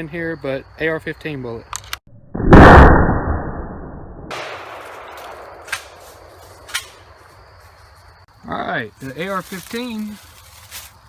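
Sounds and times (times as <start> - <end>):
shotgun blast: 2.4 - 6.0.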